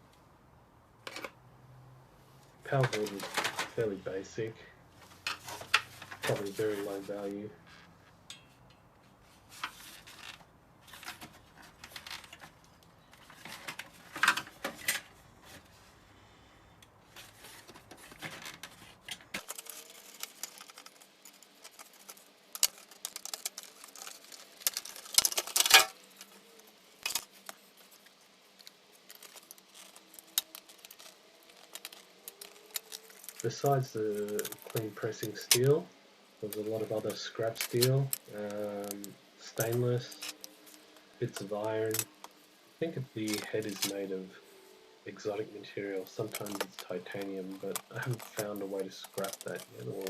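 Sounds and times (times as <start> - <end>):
small metal parts and tools clattering: 2.7 - 3.8, 7.7 - 8.9, 9.5 - 15.6, 17.1 - 35.8, 36.4 - 42.4, 45.9 - 50.0.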